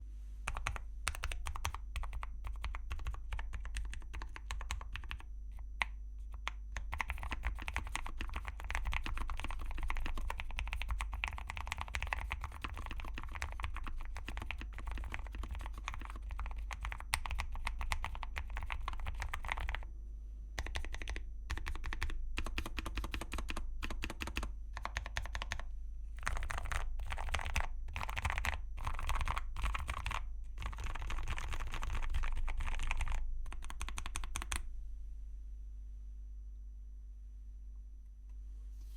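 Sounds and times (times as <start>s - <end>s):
mechanical keyboard typing: 0.5s - 19.8s, 20.6s - 34.6s.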